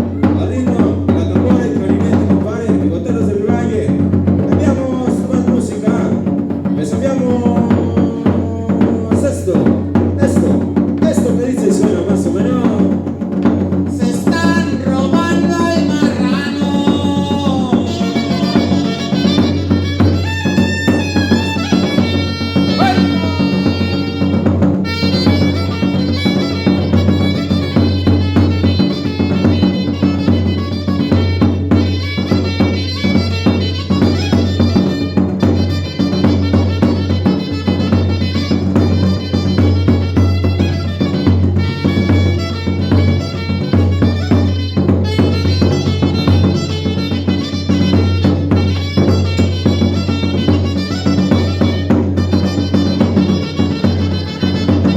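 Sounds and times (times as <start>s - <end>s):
drum beat: 0.0s - 54.9s
bass: 12.7s - 54.9s.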